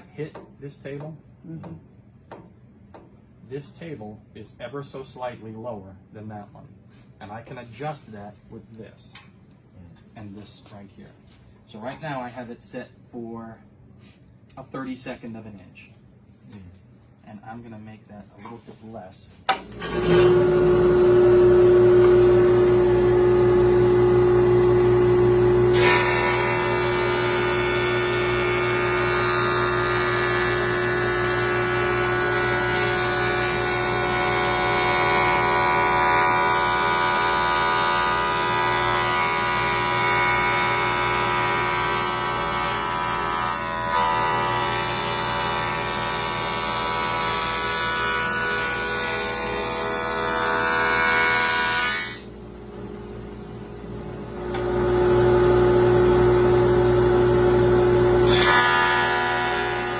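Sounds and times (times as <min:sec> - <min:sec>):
jointer motor whining: 0:19.5 - 0:43.3.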